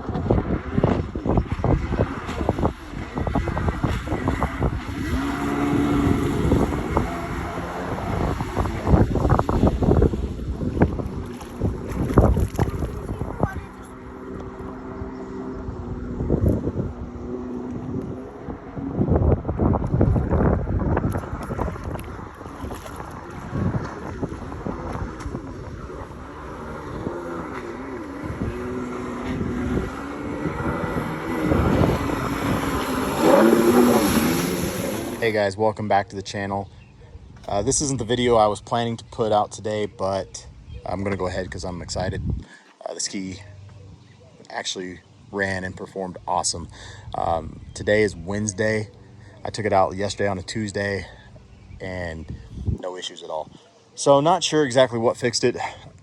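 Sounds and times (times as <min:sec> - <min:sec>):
wind buffeting microphone: 0:00.0 - 0:35.7, 0:36.6 - 0:42.5, 0:45.1 - 0:52.8
jet ski engine running: 0:00.0 - 0:42.4, 0:43.1 - 0:53.4
thumps and splashes: 0:10.8 - 0:13.5, 0:19.8 - 0:25.4.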